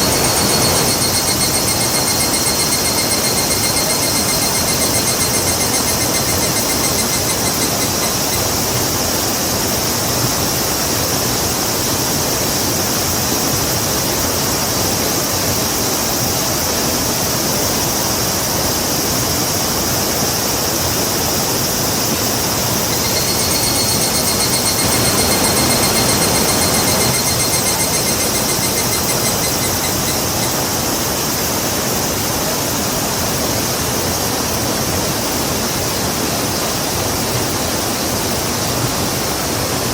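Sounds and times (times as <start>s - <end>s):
high pulsing trill: 0.0s - 8.6s, 22.7s - 30.8s.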